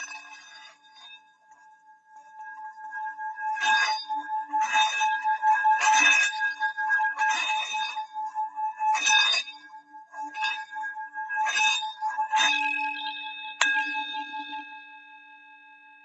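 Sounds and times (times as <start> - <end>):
singing bowl ringing: 12.5 - 16.0.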